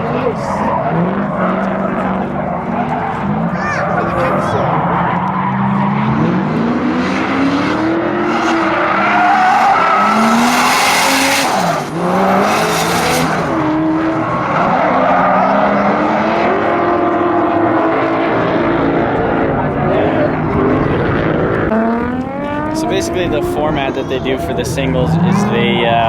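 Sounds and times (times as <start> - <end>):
car engine revving: 0.0 - 26.0
tire squeal and skidding: 0.1 - 6.7, 8.0 - 16.6.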